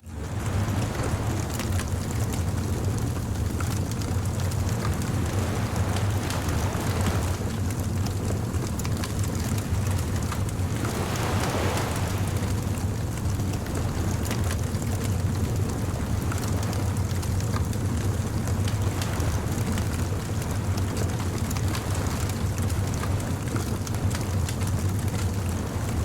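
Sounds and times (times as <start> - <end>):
surf rumble: 0.0 - 26.0
wave washing in: 0.0 - 26.0
bonfire crackling: 0.2 - 16.8.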